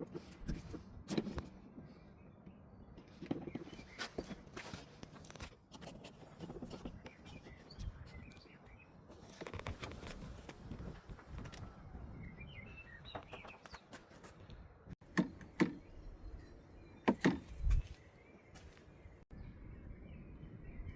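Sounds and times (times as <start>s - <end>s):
birds chirping: 6.2s - 10.0s, 11.4s - 20.9s.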